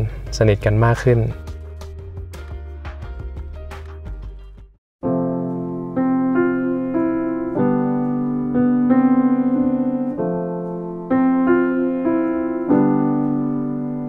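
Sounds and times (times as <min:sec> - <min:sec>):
slow piano music: 0:05.0 - 0:14.0.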